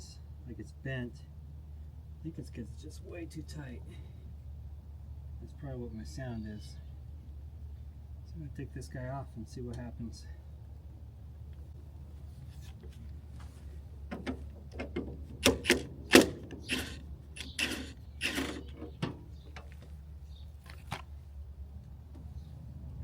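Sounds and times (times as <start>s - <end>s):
low steady hum: 0.0s - 23.0s
metallic clicks and clanks: 14.1s - 19.8s.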